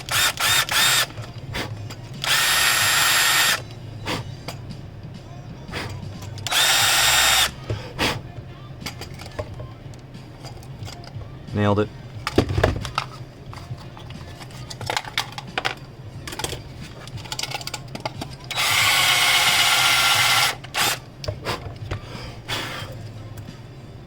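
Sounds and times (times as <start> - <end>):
power drill drilling: 0.0 - 1.1, 2.2 - 3.6, 6.5 - 7.6, 18.5 - 21.0
handling clicks and knocks: 12.2 - 18.5.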